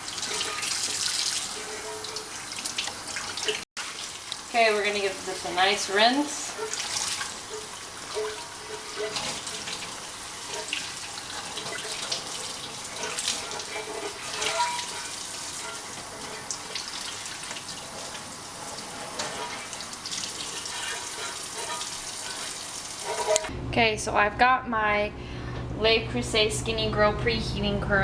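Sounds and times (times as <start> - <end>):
tap water running into sink: 0.0 - 4.5, 6.6 - 23.5.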